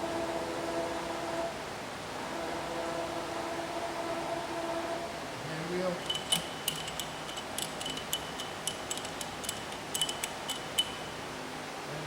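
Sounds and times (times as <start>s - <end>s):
handwheel metallic clicks: 6.0s - 11.0s.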